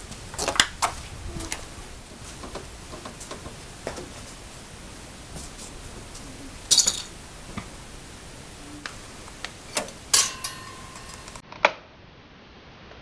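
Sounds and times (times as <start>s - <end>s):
short ringing tone: 10.1s - 11.4s.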